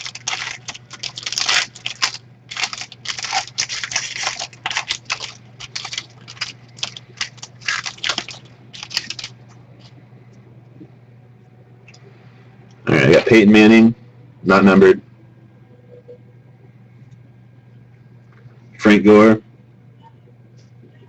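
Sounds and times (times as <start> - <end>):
card packaging crinkling and tearing: 0.0 - 9.4.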